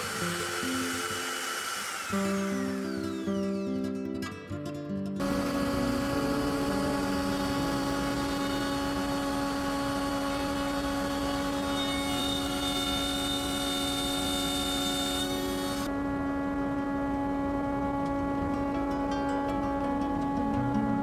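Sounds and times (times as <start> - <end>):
power tool motor whining: 0.0 - 21.0.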